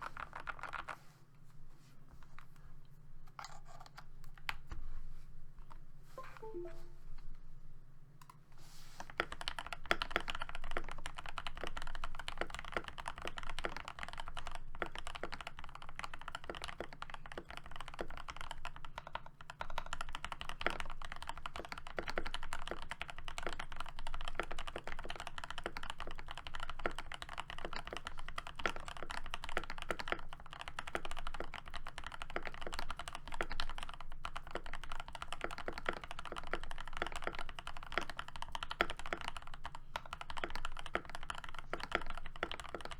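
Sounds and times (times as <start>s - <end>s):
mechanical keyboard typing: 9.1s - 42.9s.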